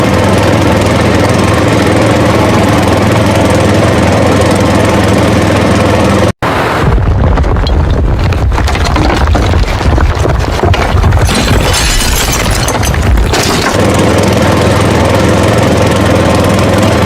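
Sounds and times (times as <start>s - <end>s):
low rumble: 6.6s - 13.8s
clicks and knocks: 7.6s - 13.8s.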